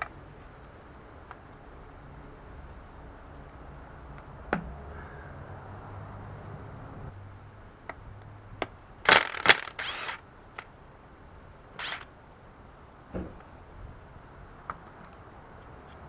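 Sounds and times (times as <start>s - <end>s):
metal parts clattering: 9.1s - 10.2s, 11.8s - 12.1s
short metal rattle: 9.1s - 10.2s, 11.8s - 12.1s.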